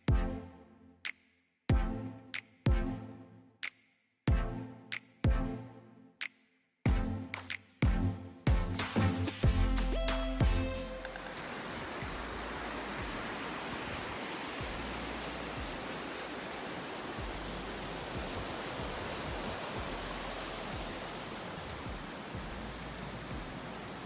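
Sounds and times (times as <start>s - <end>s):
waterfall rushing: 10.0s - 24.0s.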